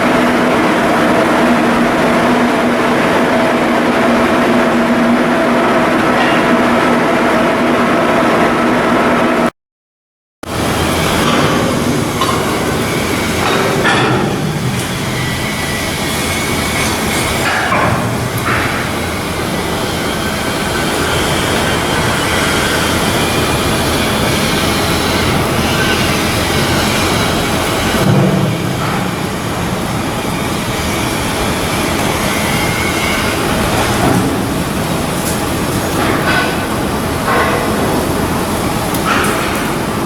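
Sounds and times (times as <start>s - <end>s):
loud mechanical din: 10.4s - 40.0s
metallic squeals: 10.6s - 17.5s.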